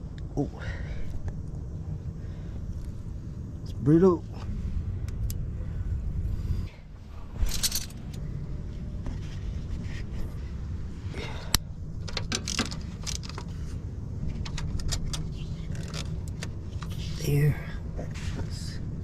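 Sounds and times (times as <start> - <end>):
low background hum: 0.0 - 19.0
metal tools clinking and scraping: 7.4 - 8.2.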